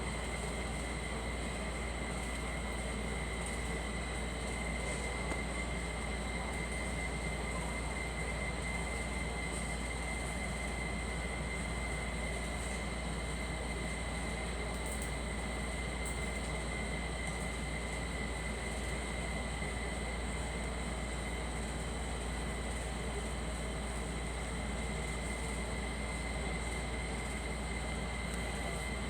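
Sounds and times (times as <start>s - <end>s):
constant high whine: 0.0s - 29.0s
machine hum and hiss: 0.0s - 29.0s.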